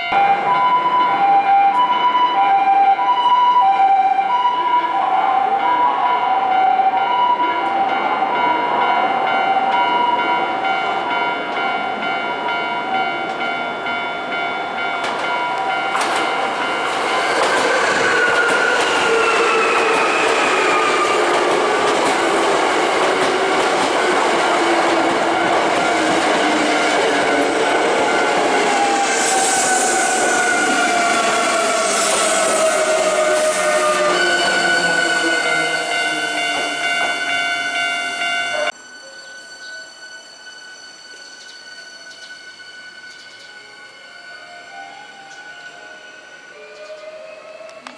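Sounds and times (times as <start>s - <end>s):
level crossing bell ringing: 5.6s - 17.4s, 33.9s - 40.7s
train wheels on rails: 7.6s - 39.0s.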